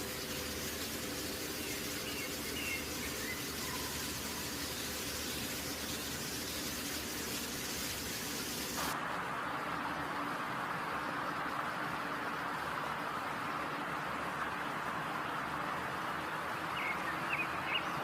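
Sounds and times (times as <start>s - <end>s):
chicken deep-frying in oil: 0.0s - 9.0s.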